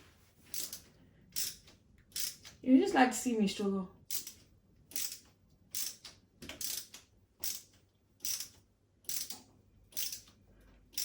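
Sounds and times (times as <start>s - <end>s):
screw scraping into wall plug: 0.5s - 2.5s.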